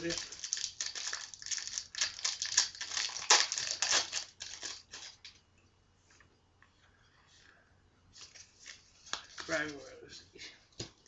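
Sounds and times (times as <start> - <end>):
foil wrapper crinkling: 0.0 - 5.4.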